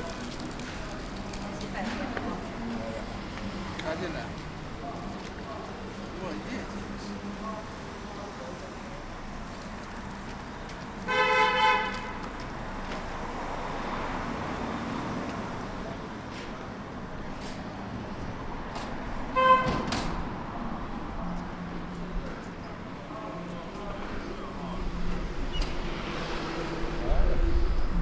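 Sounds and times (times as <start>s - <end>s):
street traffic noise: 0.0s - 28.0s
vehicle horn honking: 11.1s - 12.2s, 19.3s - 19.9s.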